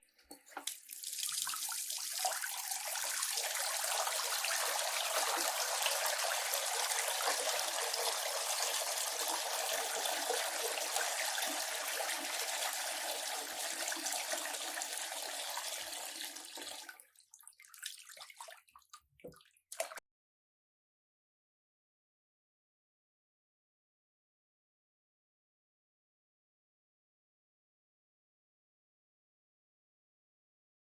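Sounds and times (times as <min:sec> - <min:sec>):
water dripping: 0:00.2 - 0:20.0
tap water splashing into basin: 0:00.3 - 0:20.0.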